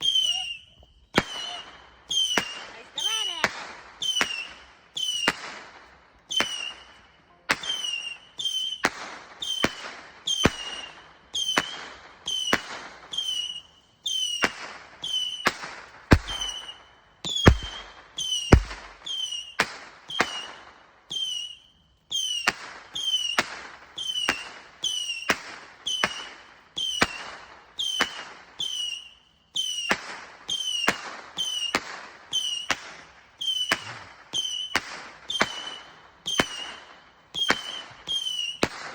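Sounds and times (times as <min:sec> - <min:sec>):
whistling firework shots: 0:00.0 - 0:38.9
heavy firework booms: 0:14.4 - 0:20.4.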